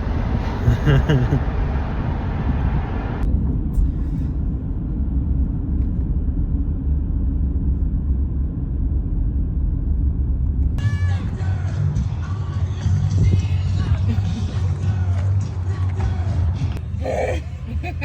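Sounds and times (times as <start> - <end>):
vehicle road and engine drone: 0.0 - 18.0
music: 10.8 - 18.0.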